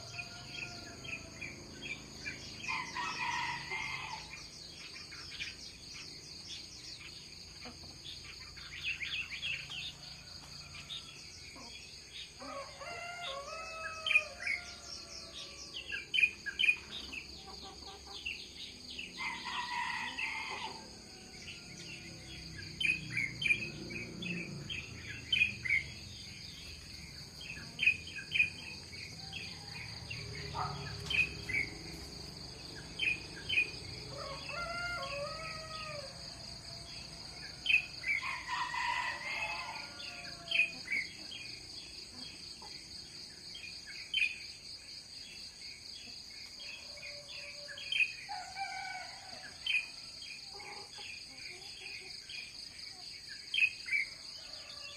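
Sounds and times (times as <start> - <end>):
rooster crowing: 0.0 - 1.6, 2.6 - 4.4, 12.4 - 16.0, 19.2 - 25.8, 27.8 - 31.9, 33.0 - 41.0, 46.7 - 50.1, 54.2 - 54.9
bird chirps: 0.0 - 20.8, 21.5 - 36.2
insects droning: 0.0 - 54.9.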